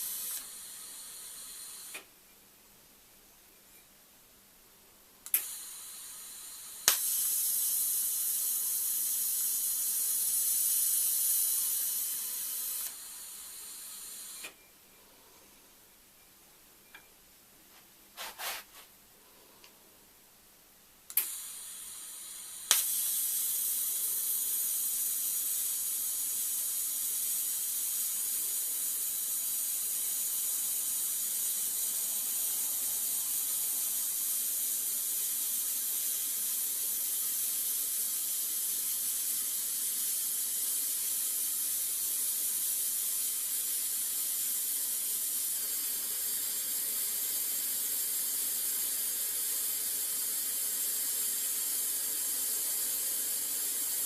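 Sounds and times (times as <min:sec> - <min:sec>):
welding arc hissing: 0:00.0 - 0:02.0, 0:05.3 - 0:14.6, 0:21.1 - 0:54.0
welding arc striking crack: 0:06.8 - 0:07.2, 0:22.7 - 0:23.1.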